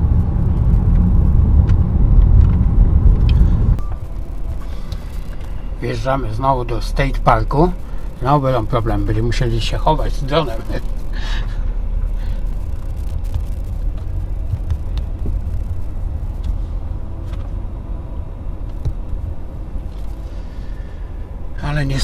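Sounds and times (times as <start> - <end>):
car engine and road noise: 0.0 - 22.0.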